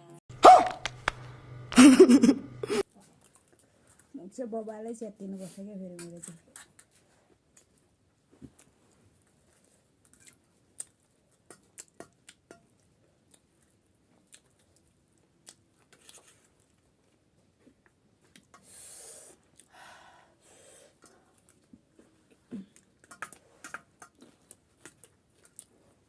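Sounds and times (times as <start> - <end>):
crunching and chewing crisp food: 2.8 - 4.1, 6.5 - 18.7, 20.8 - 26.0.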